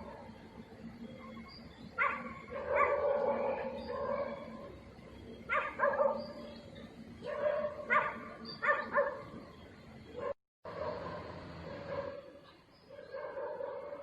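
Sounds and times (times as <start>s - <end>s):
dog barking: 2.0s - 4.7s, 5.5s - 6.4s, 7.2s - 9.3s, 10.2s - 14.0s.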